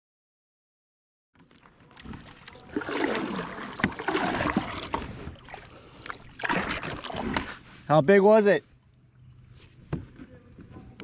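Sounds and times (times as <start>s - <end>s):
water splashing around kayak: 1.4s - 11.0s.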